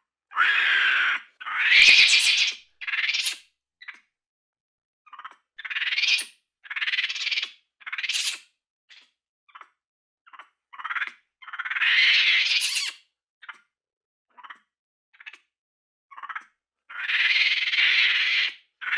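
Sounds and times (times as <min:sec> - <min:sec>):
monkey squealing and chirping: 0:00.4 - 0:03.4, 0:05.6 - 0:06.3, 0:07.0 - 0:08.4, 0:10.8 - 0:13.0.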